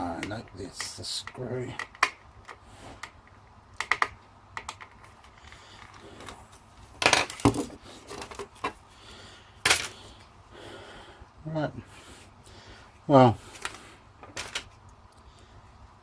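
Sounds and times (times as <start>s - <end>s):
plastic and metal parts clicking: 0.1s - 6.4s, 13.5s - 15.2s.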